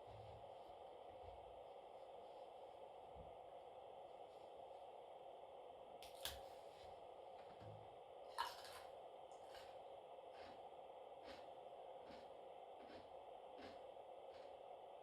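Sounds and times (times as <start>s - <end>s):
steady low hum: 0.0s - 15.0s
cucumber crunching: 11.2s - 14.4s.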